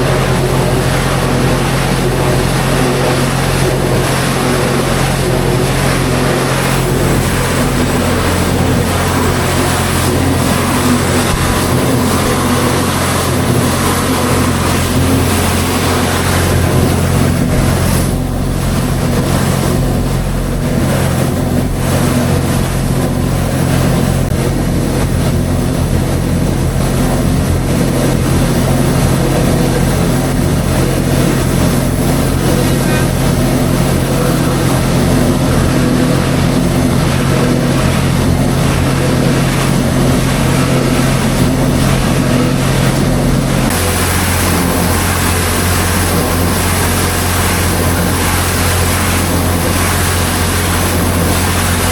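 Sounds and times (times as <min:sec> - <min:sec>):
pressure washer motor drone: 0:00.0 - 0:51.9
spray hissing: 0:43.7 - 0:51.9.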